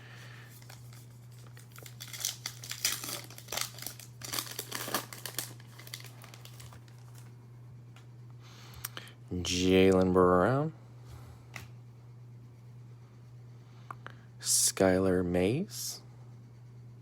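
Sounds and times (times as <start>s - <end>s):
low electrical hum: 0.0s - 17.0s
wrapper torn open and crinkled: 0.5s - 7.3s.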